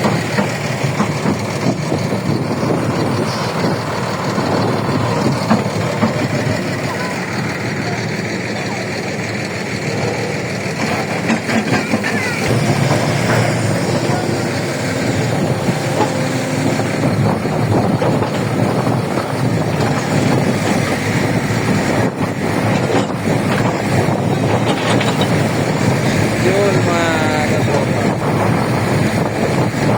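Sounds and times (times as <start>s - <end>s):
heavy diesel engine under load: 0.0s - 29.9s
metallic rattling and clanking: 9.2s - 26.8s.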